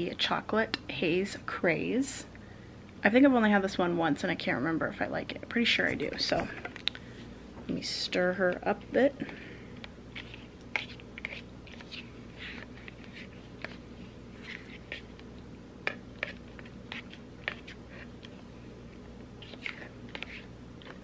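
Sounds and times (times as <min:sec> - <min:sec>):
steady low hum: 0:00.0 - 0:21.0
spoon scraping plastic cup: 0:10.1 - 0:13.8, 0:14.4 - 0:15.2, 0:15.9 - 0:18.4, 0:19.4 - 0:21.0.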